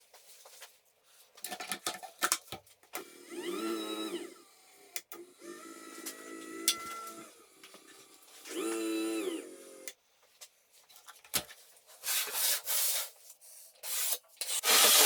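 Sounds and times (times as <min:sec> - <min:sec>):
small electric motor whirring: 0:03.0 - 0:09.9
steady motor whir: 0:03.0 - 0:09.9.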